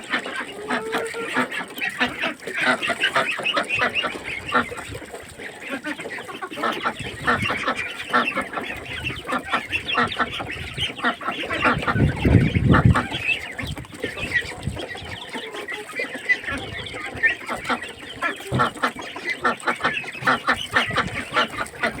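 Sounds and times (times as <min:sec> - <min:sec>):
poultry clucking: 0:00.0 - 0:22.0.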